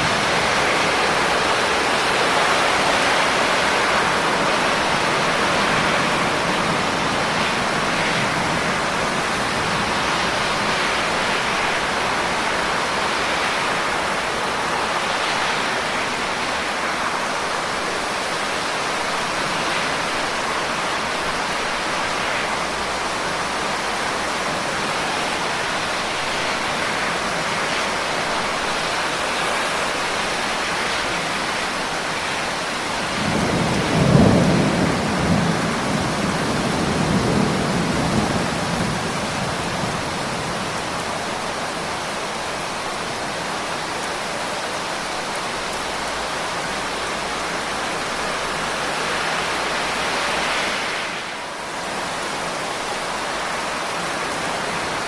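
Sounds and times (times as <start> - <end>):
steady rain falling: 0.0 - 55.0
thunder rumbling: 33.0 - 40.8.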